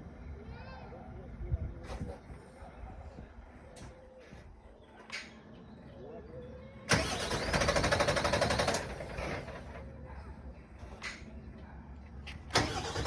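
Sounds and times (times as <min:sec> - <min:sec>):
diesel engine cranking on starter: 0:06.9 - 0:10.0, 0:12.3 - 0:13.0.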